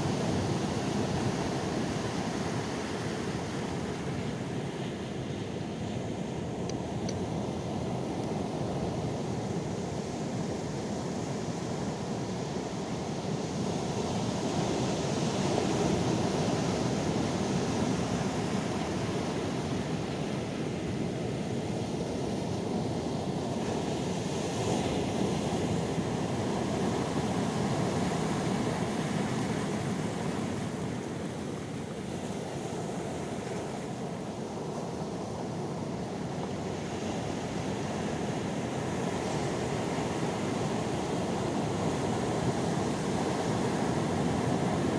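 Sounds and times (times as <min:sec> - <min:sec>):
sea waves washing ashore: 0:00.0 - 0:44.9.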